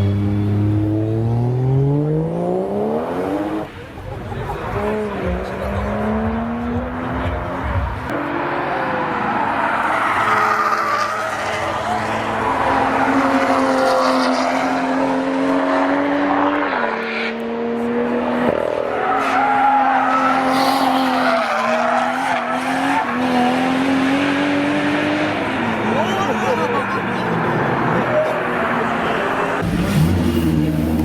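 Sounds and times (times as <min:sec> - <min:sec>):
car engine at high revs: 0:00.0 - 0:31.0
tires squealing: 0:03.1 - 0:17.4, 0:18.2 - 0:31.0.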